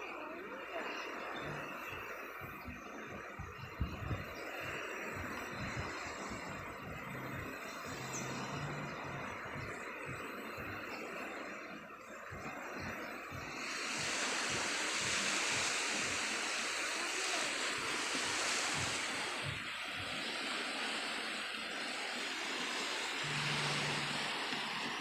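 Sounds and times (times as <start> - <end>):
low steady hum: 0.0 - 20.2, 23.2 - 25.0
sea surf washing on shore: 0.0 - 25.0
wind buffeting microphone: 1.4 - 9.8.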